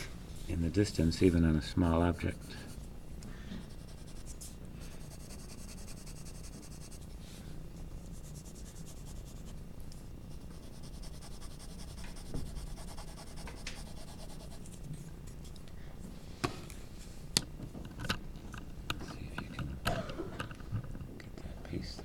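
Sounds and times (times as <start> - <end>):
pencil shading on paper: 3.6 - 7.1, 8.1 - 9.6, 10.3 - 14.8.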